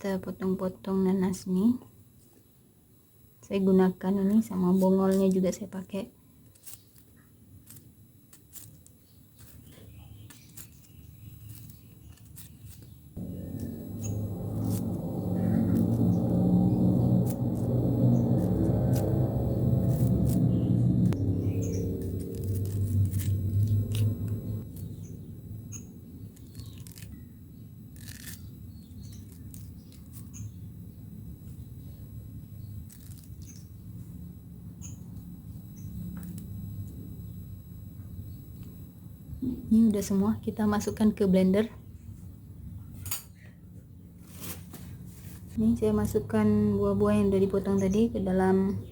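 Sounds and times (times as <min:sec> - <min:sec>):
steady low hum: 0:00.0 - 0:48.9
faint bird chirps: 0:09.0 - 0:14.8, 0:19.9 - 0:22.0, 0:24.6 - 0:42.0
knife cutting pineapple: 0:21.6 - 0:25.0, 0:26.4 - 0:27.2, 0:27.9 - 0:30.6.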